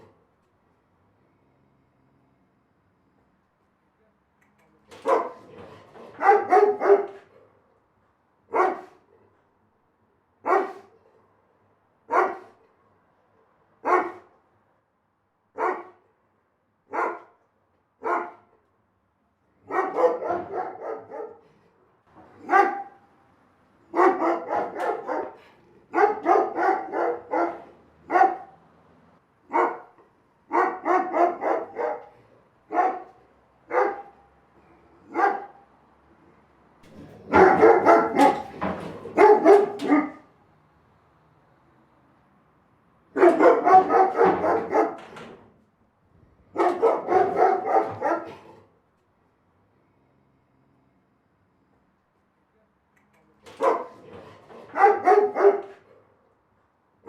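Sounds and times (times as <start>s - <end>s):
big dog barking: 5.0s - 7.6s, 8.5s - 9.4s, 10.4s - 11.3s, 12.1s - 12.7s, 13.8s - 14.4s, 15.5s - 16.1s, 16.9s - 17.4s, 18.0s - 18.6s, 19.6s - 23.1s, 23.8s - 28.6s, 29.4s - 35.7s, 36.9s - 40.4s, 43.1s - 45.4s, 46.4s - 48.8s, 53.5s - 56.2s.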